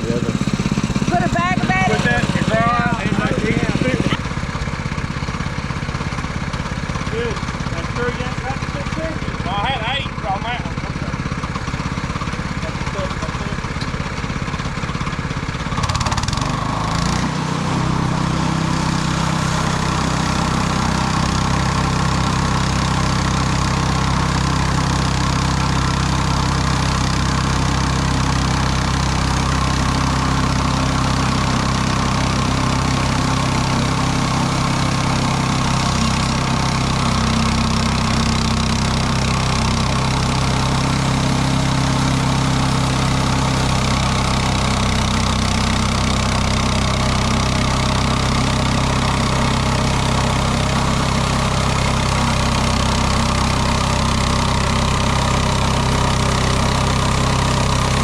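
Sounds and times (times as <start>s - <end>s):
sawmill gas engine running: 0.0s - 58.0s.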